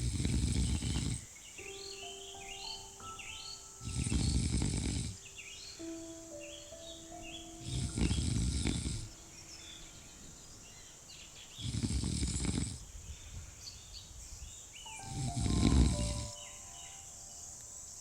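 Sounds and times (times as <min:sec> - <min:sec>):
person snoring: 0:00.0 - 0:01.3, 0:03.8 - 0:05.3, 0:07.6 - 0:09.2, 0:11.6 - 0:12.8, 0:15.0 - 0:16.4.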